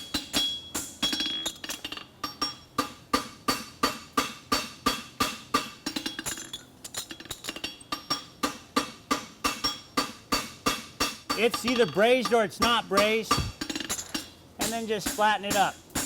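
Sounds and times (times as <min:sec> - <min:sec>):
hammer striking metal on anvil: 0:00.0 - 0:06.4, 0:07.8 - 0:16.0.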